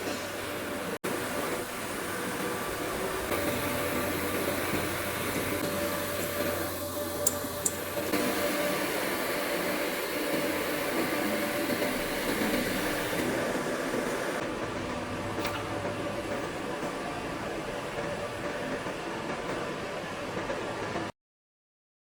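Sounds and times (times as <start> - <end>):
welding equipment humming: 0.3 - 16.9.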